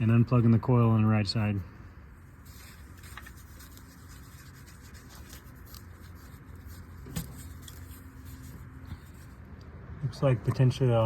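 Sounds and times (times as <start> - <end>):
hands rubbing on hoses: 2.4 - 9.4.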